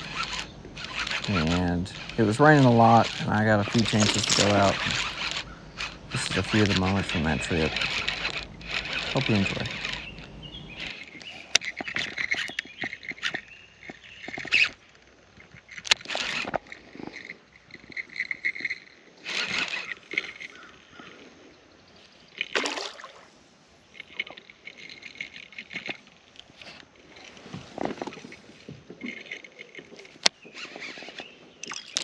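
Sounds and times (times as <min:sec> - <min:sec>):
water swishing: 0:00.0 - 0:11.4, 0:22.2 - 0:32.0
frogs chirping: 0:00.0 - 0:14.8
sharp clicks from kayak: 0:00.0 - 0:21.1, 0:24.0 - 0:32.0.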